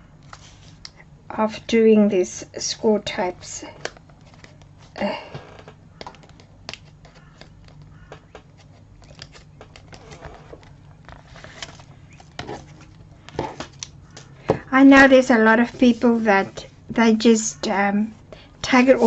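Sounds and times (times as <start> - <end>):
low steady hum: 0.0 - 19.0
paper rustling: 0.3 - 0.8, 3.7 - 17.2.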